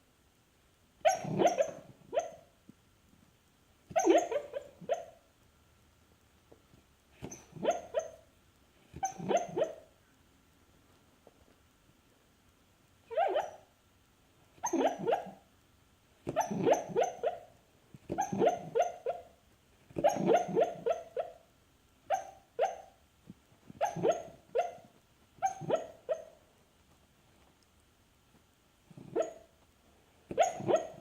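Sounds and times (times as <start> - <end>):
dog barking and yipping: 1.0 - 2.5, 3.9 - 5.2, 7.2 - 8.2, 9.0 - 9.9, 13.1 - 13.7, 14.6 - 15.4, 16.3 - 17.5, 18.1 - 19.3, 20.0 - 21.4, 22.1 - 23.0, 23.8 - 26.4, 29.0 - 29.5, 30.3 - 31.0.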